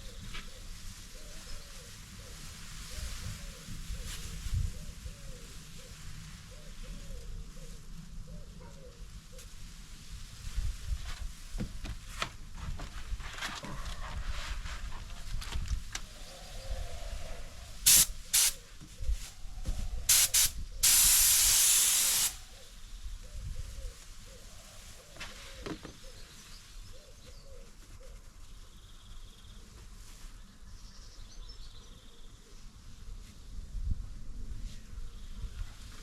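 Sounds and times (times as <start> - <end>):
spray gun hissing: 17.7 - 18.6, 20.0 - 22.7.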